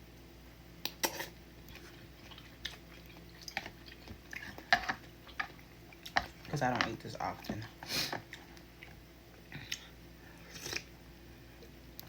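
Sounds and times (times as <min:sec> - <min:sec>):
person chewing noodles: 0:00.9 - 0:06.5, 0:07.4 - 0:10.9.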